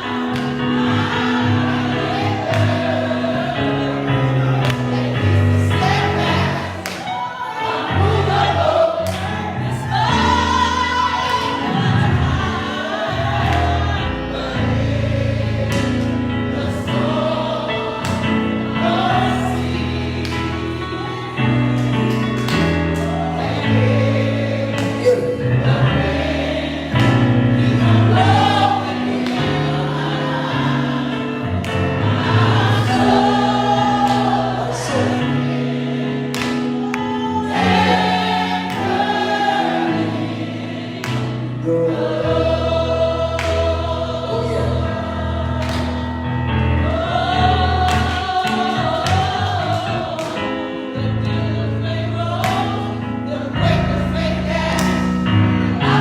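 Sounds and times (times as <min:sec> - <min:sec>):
gospel choir singing: 0:00.0 - 0:56.0.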